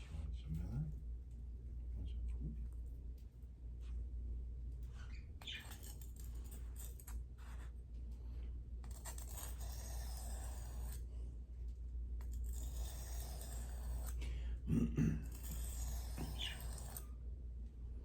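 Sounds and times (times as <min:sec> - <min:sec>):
steady low hum: 0:00.0 - 0:18.0
knife scraping on sharpening stone: 0:05.4 - 0:07.2, 0:08.8 - 0:11.0, 0:12.2 - 0:14.2, 0:15.2 - 0:17.1.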